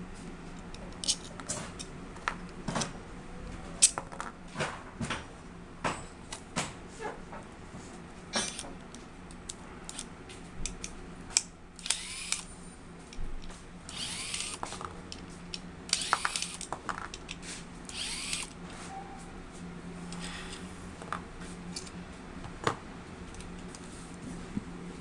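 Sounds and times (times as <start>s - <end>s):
handheld power tool whirring: 11.8s - 12.5s, 13.9s - 14.6s, 15.9s - 16.7s, 17.9s - 18.6s.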